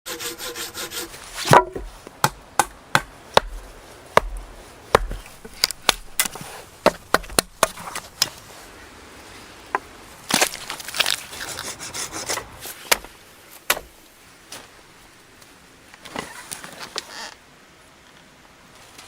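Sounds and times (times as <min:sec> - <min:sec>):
axe chopping wood: 0:01.4 - 0:08.4, 0:12.9 - 0:13.1, 0:13.7 - 0:13.9.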